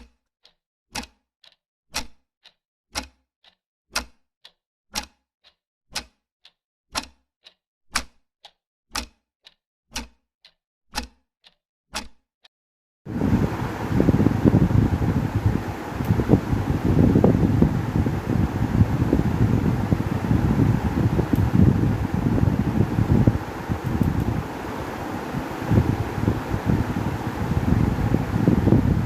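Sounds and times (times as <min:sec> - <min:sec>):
clock ticking: 0:00.0 - 0:12.2
ceiling fan air rush: 0:13.1 - 0:29.0.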